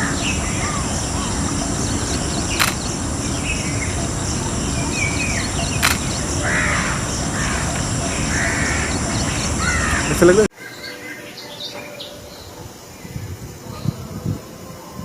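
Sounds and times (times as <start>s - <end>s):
high-pitched drone: 0.0s - 10.5s
bird calling: 0.0s - 12.2s
sharp clicks: 2.5s - 3.0s, 5.8s - 6.3s.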